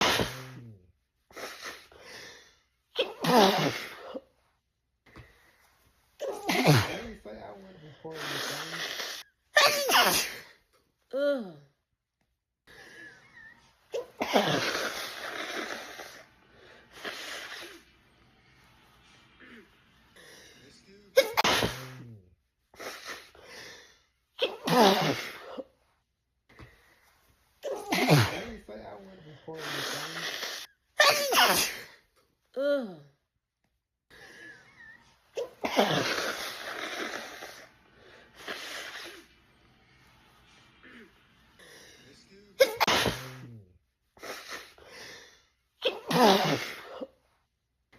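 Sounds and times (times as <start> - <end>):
woman sneezing: 0.0 - 0.8, 3.0 - 4.3, 6.2 - 10.6, 13.4 - 16.2, 21.2 - 22.2, 24.4 - 25.7, 27.6 - 32.0, 35.4 - 37.6, 42.6 - 43.6, 45.8 - 47.2
breathy intake: 6.3 - 9.2.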